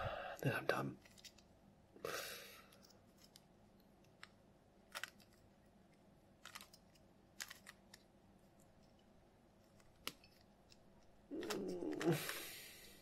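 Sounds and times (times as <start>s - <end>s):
puzzle cube clicking: 2.7s - 5.5s, 6.4s - 8.1s, 9.7s - 13.0s
breathy burst: 11.4s - 13.0s.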